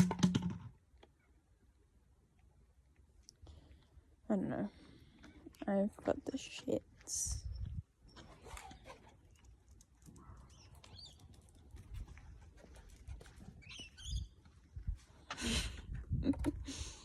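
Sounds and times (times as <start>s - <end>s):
bird chirping: 10.0s - 11.6s, 13.6s - 14.4s.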